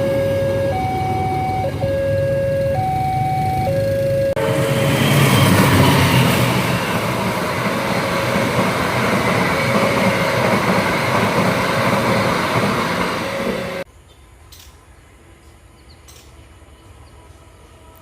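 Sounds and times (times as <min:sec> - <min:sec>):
two-tone crossing alarm: 0:00.0 - 0:07.0
train passing with rumble: 0:00.0 - 0:18.0.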